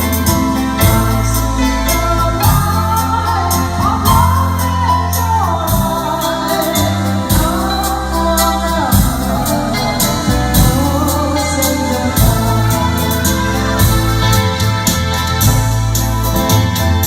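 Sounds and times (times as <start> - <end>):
drum accompaniment: 0.0 - 17.0
sliding keyboard lead melody: 0.0 - 17.0
steady bass line: 0.0 - 17.0.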